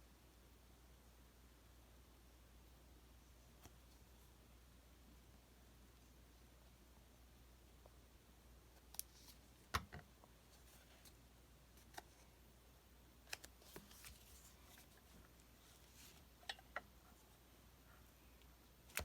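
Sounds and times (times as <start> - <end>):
hands handling paper: 13.3 - 16.7.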